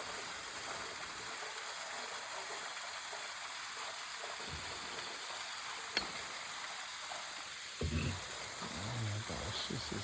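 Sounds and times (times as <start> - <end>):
small stream running: 0.0 - 10.0.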